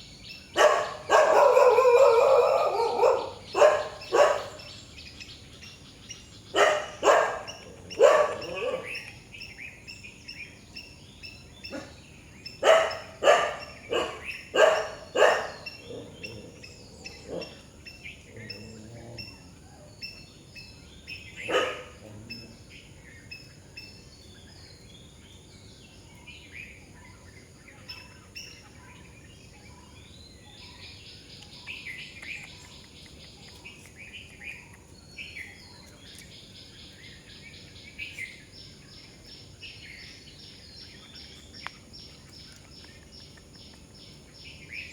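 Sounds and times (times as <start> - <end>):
birds chirping: 0.0 - 44.9
dog barking: 0.6 - 4.7, 6.5 - 9.1, 11.7 - 12.0, 12.6 - 17.6, 21.4 - 22.4.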